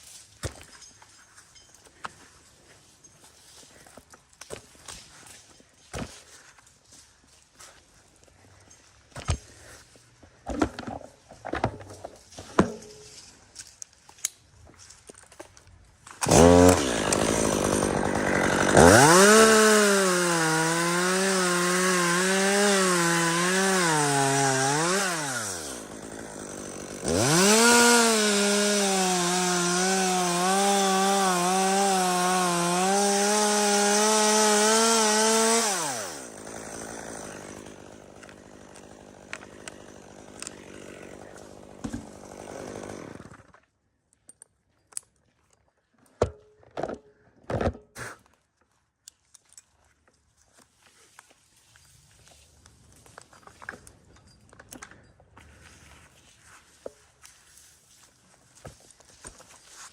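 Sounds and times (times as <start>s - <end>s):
chainsaw cutting wood: 16.2s - 43.7s.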